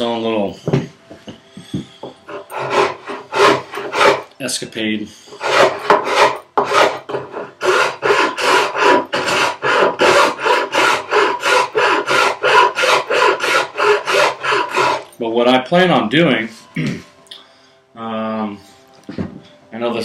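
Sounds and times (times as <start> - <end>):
hand file rasping on wood: 2.3 - 4.3, 5.4 - 15.1.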